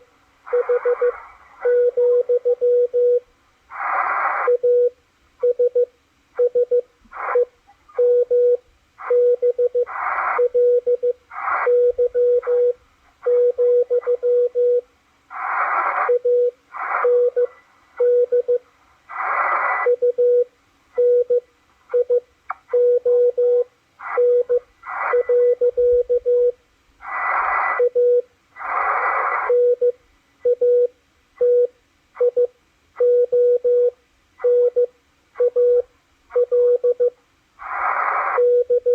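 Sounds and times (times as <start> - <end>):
static hiss: 0.0 - 5.4, 6.1 - 30.4, 37.1 - 38.9
morse code beeps: 0.5 - 3.2, 8.0 - 14.8, 15.8 - 18.6, 22.0 - 26.6, 29.5 - 37.2, 38.1 - 38.9.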